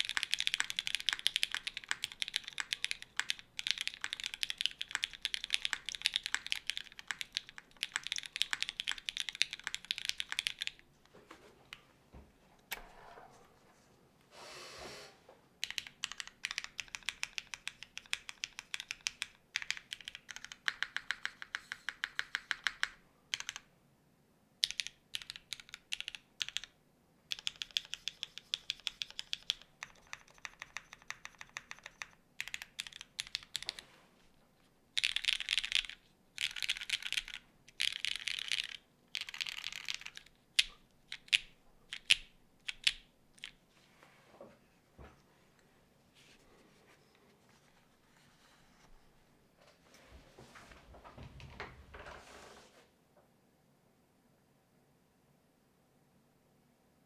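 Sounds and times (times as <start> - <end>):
mechanical keyboard typing: 0.0 - 10.8, 15.6 - 23.7, 24.6 - 33.8, 35.0 - 43.6.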